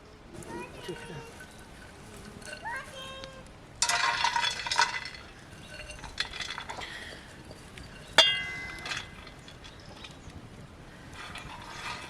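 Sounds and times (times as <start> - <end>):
dishes and utensils clinking: 3.8 - 7.1, 7.9 - 10.2.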